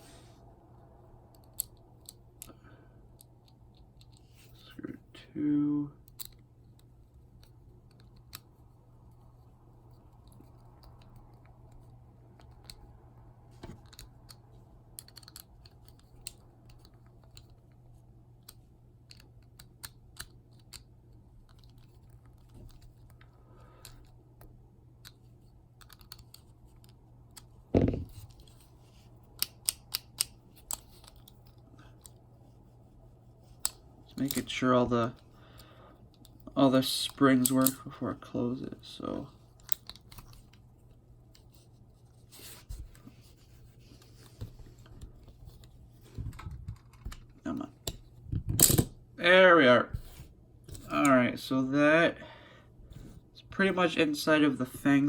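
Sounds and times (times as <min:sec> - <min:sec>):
plastic toy parts clicking: 0:01.3 - 0:02.6, 0:13.7 - 0:17.7, 0:18.4 - 0:20.9, 0:25.8 - 0:27.5, 0:29.3 - 0:32.2, 0:37.0 - 0:37.8, 0:39.6 - 0:40.6.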